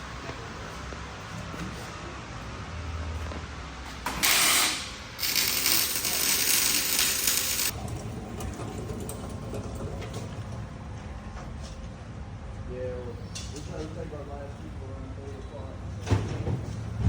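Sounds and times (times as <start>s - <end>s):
pneumatic tool bursts: 4.1s - 7.7s.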